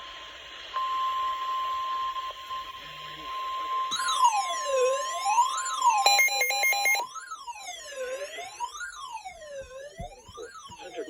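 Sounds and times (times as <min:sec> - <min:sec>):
steady single-pitch alert tone: 0:06.0 - 0:07.0
stepped beeps: 0:06.0 - 0:07.0.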